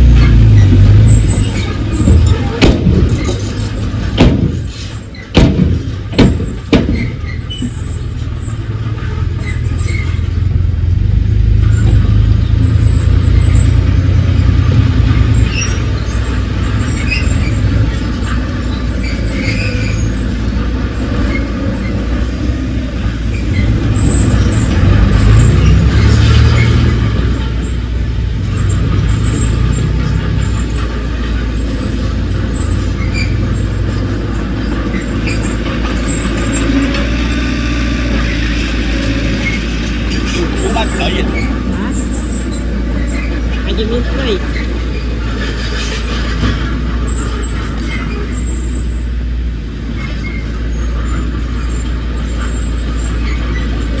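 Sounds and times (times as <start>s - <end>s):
heavy diesel engine working: 0.0s - 54.0s
loud knocks: 0.6s - 7.9s.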